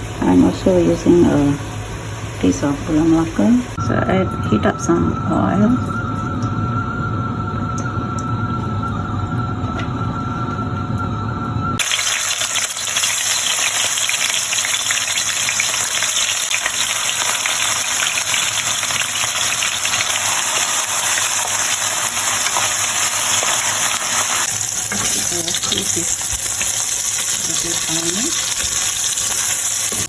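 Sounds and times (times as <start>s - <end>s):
food frying in hot oil: 11.8s - 30.0s.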